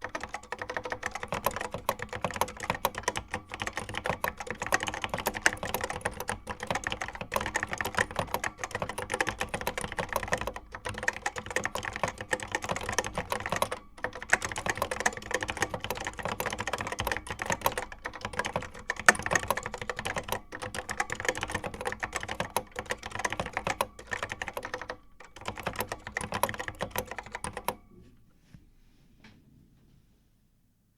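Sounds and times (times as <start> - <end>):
fast keyboard typing: 0.0 - 27.9.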